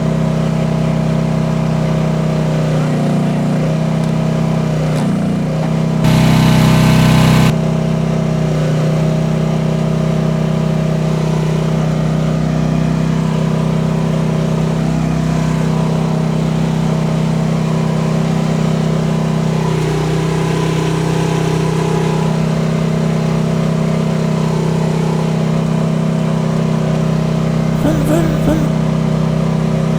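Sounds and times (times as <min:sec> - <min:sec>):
excavator engine under hydraulic load: 0:02.8 - 0:07.5.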